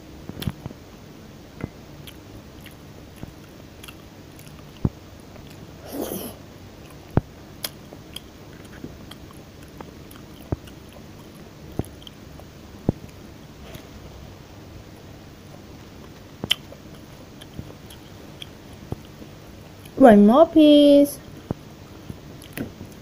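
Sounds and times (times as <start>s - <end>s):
person chewing: 2.0s - 13.9s, 15.5s - 20.0s, 22.4s - 23.0s.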